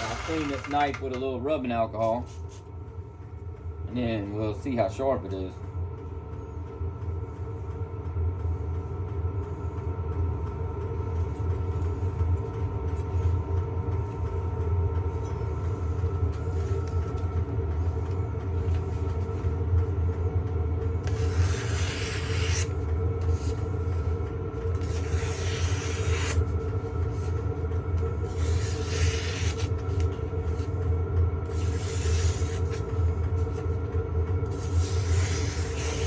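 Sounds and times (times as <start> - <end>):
belt sander motor humming: 0.0 - 1.2.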